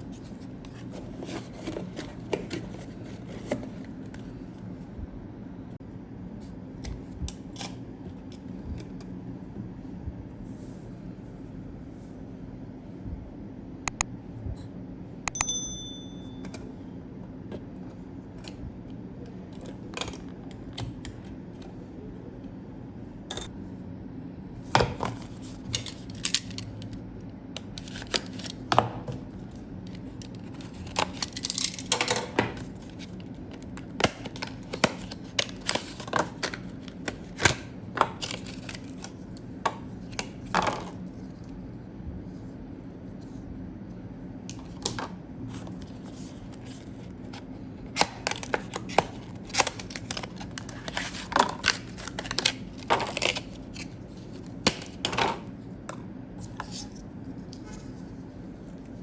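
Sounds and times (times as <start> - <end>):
small metal part ringing: 15.3 - 16.5.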